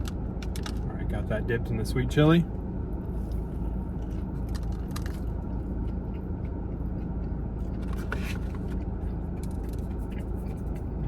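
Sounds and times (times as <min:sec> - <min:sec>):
steady low hum: 0:00.0 - 0:11.0
person chewing: 0:03.1 - 0:11.0.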